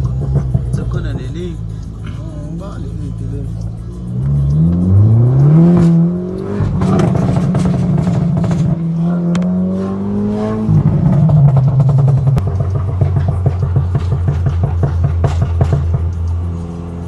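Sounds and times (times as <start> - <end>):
car engine revving: 0.0 - 17.0
exhaust cracks: 3.6 - 17.0.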